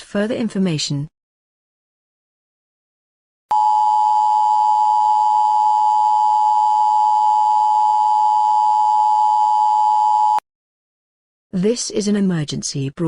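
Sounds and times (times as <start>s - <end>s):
two-tone emergency alert tone: 3.5s - 10.4s.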